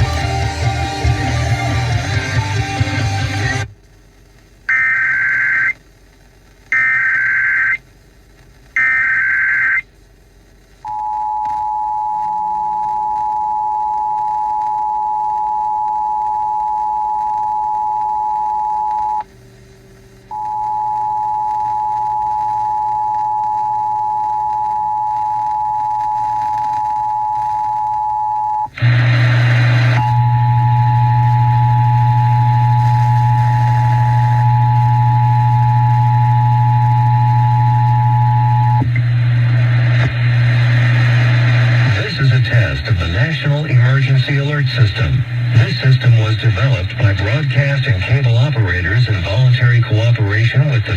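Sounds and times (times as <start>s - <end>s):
loud low hum: 0.0s - 3.7s, 26.8s - 50.9s.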